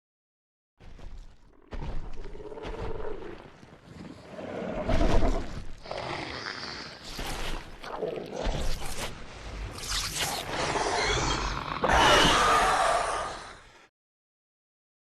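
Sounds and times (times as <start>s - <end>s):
monster growls and roars: 1.6s - 3.5s, 4.1s - 13.9s
monster screech: 9.8s - 13.6s.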